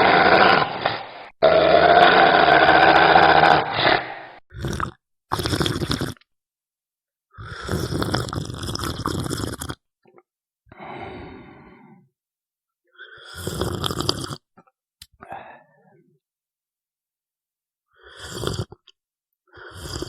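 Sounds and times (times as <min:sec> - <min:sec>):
person snoring: 0:00.0 - 0:06.3, 0:07.3 - 0:09.8, 0:10.7 - 0:12.1, 0:13.0 - 0:14.5, 0:18.0 - 0:18.9, 0:19.5 - 0:20.0.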